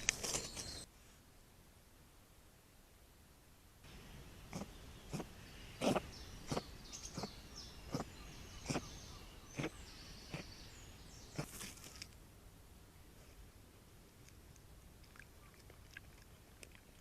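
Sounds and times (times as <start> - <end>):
fox cub hiccupping: 3.9 - 11.8.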